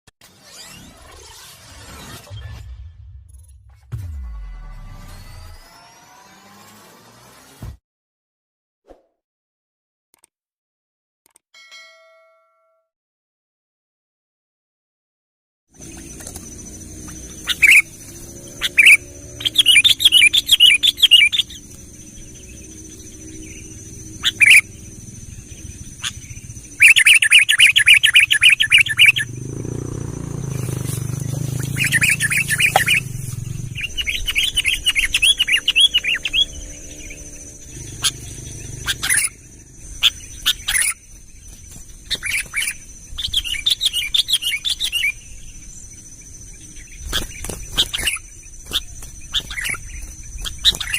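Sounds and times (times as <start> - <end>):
songbird chirping and trilling: 15.8 - 50.9
low rumble: 29.2 - 40.5
faint high-pitched drone: 31.7 - 40.4.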